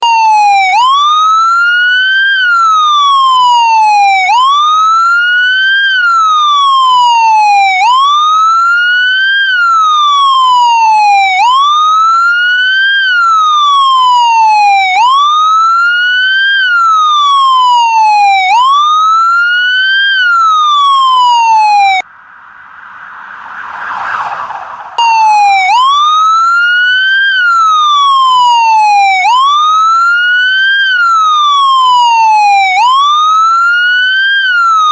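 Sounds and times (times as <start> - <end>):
police siren wailing: 0.0 - 34.9
rushing noise: 22.1 - 25.9.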